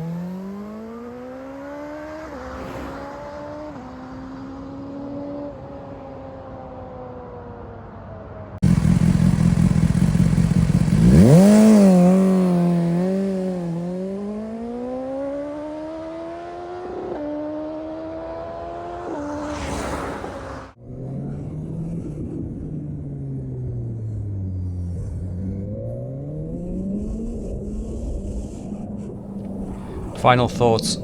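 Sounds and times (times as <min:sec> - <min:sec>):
motorcycle engine revving: 0:00.0 - 0:04.0, 0:08.6 - 0:20.8, 0:29.2 - 0:31.0.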